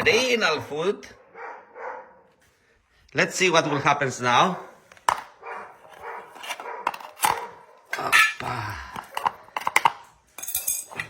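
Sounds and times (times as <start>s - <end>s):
dogs barking and whining: 1.1s - 2.4s, 4.4s - 10.1s.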